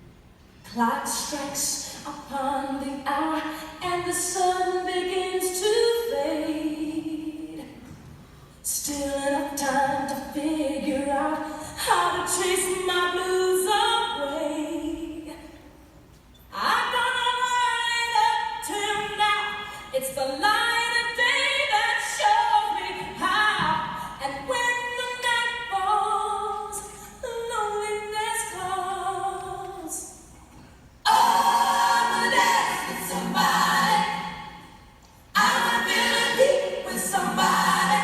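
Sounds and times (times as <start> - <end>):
several voices singing together: 31.1 - 34.7, 35.3 - 38.0.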